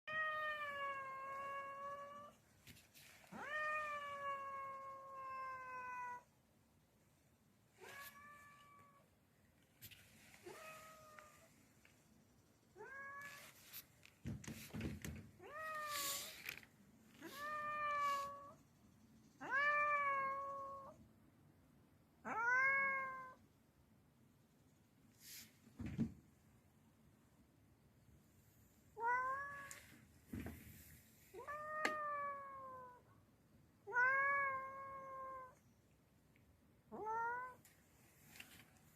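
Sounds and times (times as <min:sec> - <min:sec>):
cat meowing: 0:03.3 - 0:06.3, 0:07.8 - 0:09.1, 0:12.8 - 0:13.6, 0:17.2 - 0:18.6, 0:19.4 - 0:21.0, 0:22.2 - 0:23.4, 0:29.0 - 0:29.9, 0:31.3 - 0:33.1, 0:33.8 - 0:35.6, 0:36.9 - 0:37.7.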